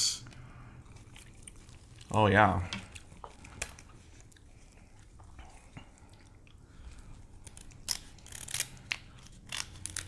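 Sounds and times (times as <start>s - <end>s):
shell crackling: 7.4s - 10.0s
scissors snipping crab shell: 7.5s - 10.0s.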